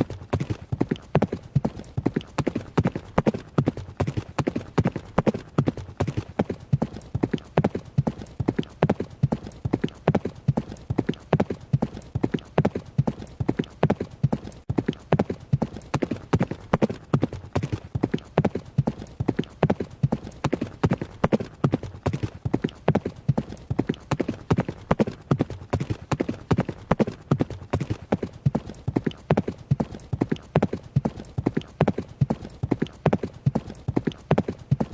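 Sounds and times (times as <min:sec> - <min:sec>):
horse hoofbeats running: 0:00.0 - 0:34.9.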